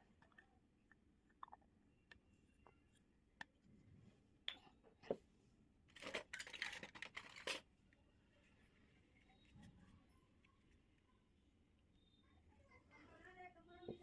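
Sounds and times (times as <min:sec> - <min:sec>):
plastic toy pieces clicking: 0:06.0 - 0:07.6.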